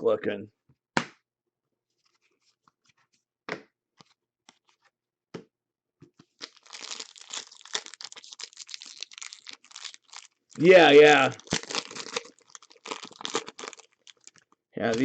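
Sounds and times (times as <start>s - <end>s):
foil wrapper crinkling and tearing: 6.4s - 15.0s.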